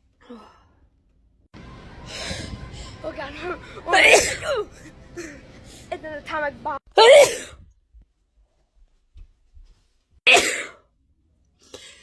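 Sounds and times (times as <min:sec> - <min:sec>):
person sneezing: 0:07.0 - 0:07.6, 0:10.3 - 0:10.8.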